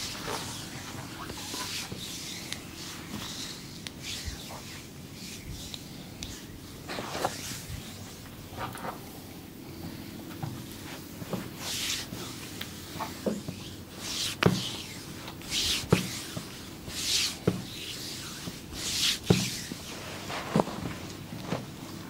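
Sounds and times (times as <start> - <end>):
hands rubbing skin: 0.0 - 9.1, 10.6 - 21.6.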